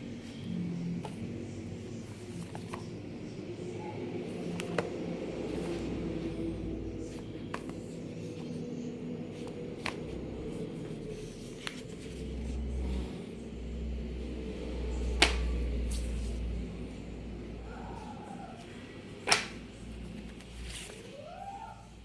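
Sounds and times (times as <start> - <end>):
steady low rumble: 0.0 - 21.0
parcel unpacking clicks and taps: 4.2 - 6.0, 7.0 - 12.3, 15.1 - 16.2, 18.6 - 21.1.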